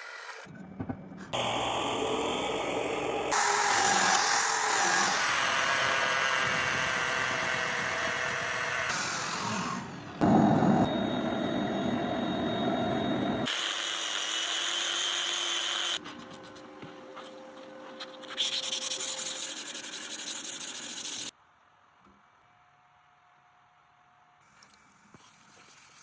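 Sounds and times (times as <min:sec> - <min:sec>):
power tool grinding metal: 0:01.4 - 0:09.2.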